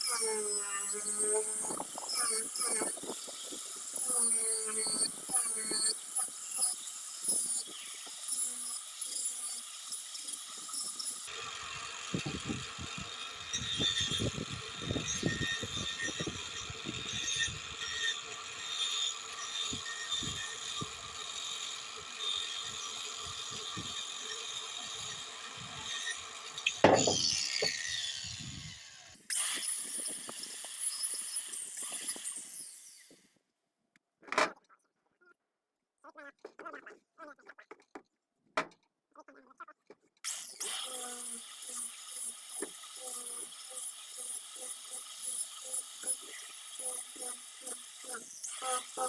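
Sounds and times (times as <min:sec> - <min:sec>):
hand tool scraping wooden mug: 0:00.0 - 0:11.5, 0:22.2 - 0:28.6, 0:40.3 - 0:49.0.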